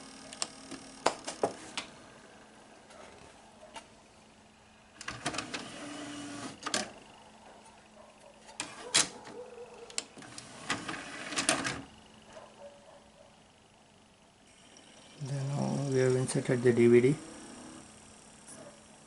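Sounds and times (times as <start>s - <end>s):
disc tray clicks and clatters: 5.0s - 7.0s, 8.5s - 11.9s
motor whirs: 5.0s - 7.1s, 9.8s - 12.0s, 14.4s - 19.0s.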